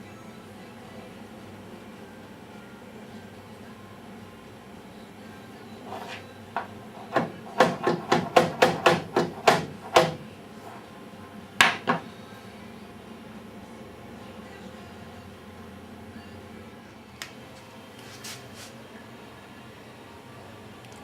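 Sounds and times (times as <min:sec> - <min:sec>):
hammer tapping on metal plate: 0:07.2 - 0:10.2, 0:11.6 - 0:12.0.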